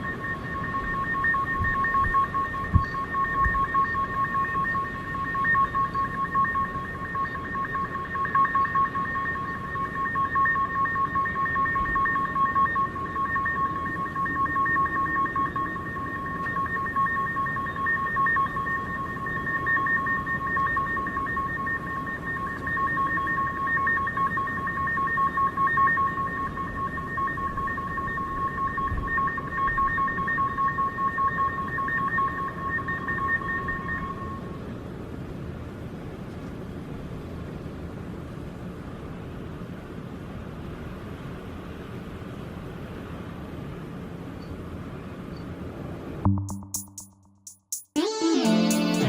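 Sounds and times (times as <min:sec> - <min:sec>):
high two-pitch electronic tone: 0:46.2 - 0:49.0.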